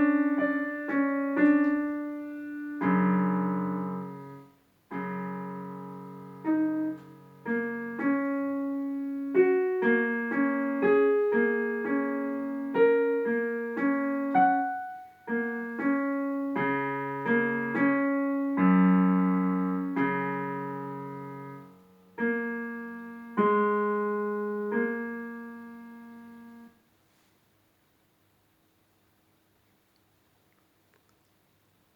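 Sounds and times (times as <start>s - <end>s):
slow piano piece: 0.0s - 26.8s.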